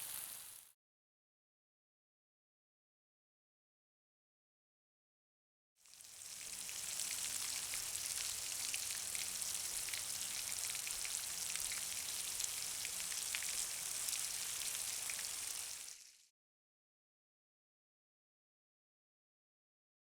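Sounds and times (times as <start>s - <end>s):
patter of rain drops: 0.0s - 0.7s, 5.9s - 16.2s.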